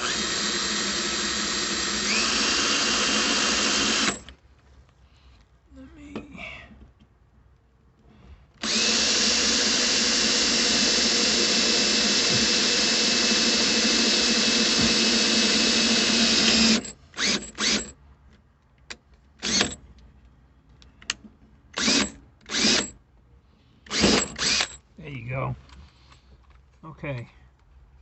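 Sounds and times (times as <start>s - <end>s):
electric drill boring through metal: 0.0s - 4.3s, 8.6s - 17.9s, 19.4s - 19.8s, 21.8s - 22.9s, 23.9s - 24.7s.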